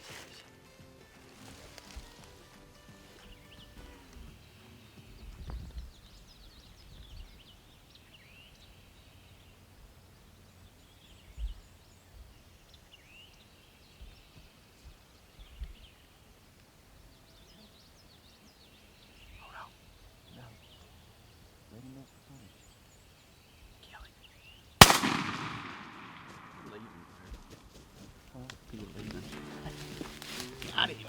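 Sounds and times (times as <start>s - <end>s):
songbirds chirping: 0.0s - 31.0s.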